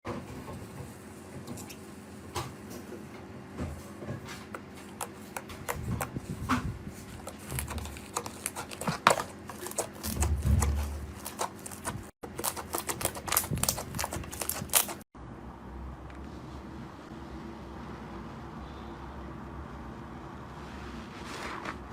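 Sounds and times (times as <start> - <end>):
slime squished by hand: 7.2 - 15.0.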